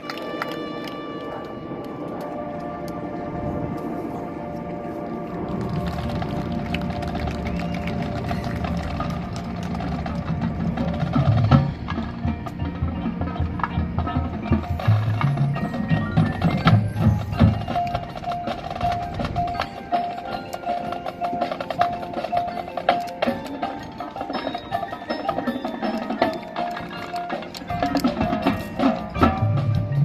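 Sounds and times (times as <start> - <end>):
low brass: 0.0 - 11.3
marching band playing: 0.0 - 30.0
mallet percussion: 5.5 - 30.0.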